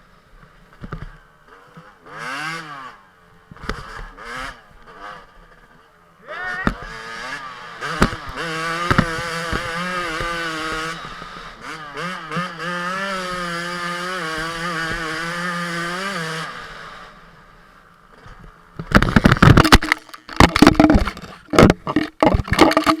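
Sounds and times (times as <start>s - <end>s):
two-stroke motorcycle engine revving: 0.8s - 23.0s
loud irregular bangs and clatter: 18.2s - 23.0s.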